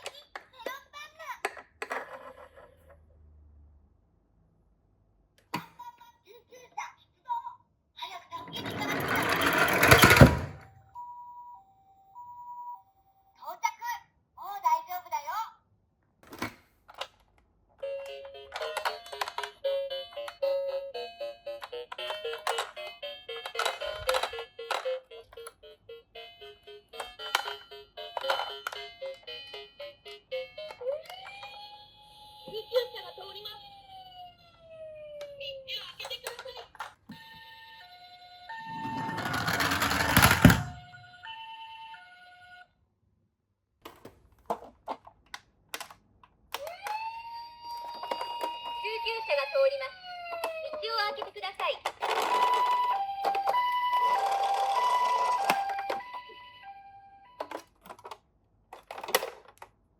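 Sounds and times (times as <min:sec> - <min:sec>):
toy car rolling clatter: 0:01.5 - 0:02.9, 0:08.4 - 0:10.7, 0:22.0 - 0:25.0, 0:35.9 - 0:37.0, 0:38.5 - 0:41.0, 0:47.7 - 0:48.9, 0:50.2 - 0:56.2
toy two-tone siren: 0:17.8 - 0:36.4, 0:37.1 - 0:42.8, 0:46.6 - 0:51.2, 0:52.0 - 0:57.7.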